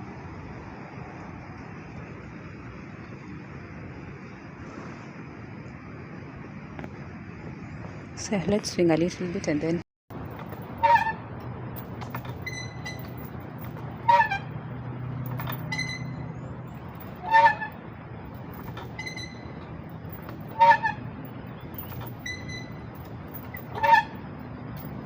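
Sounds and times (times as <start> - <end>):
playground swing squeaking: 10.1 - 25.0.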